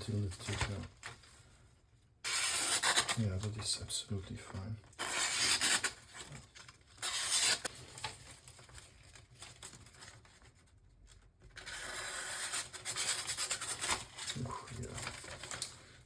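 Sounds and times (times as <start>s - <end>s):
knife slicing through paper: 7.0s - 7.7s.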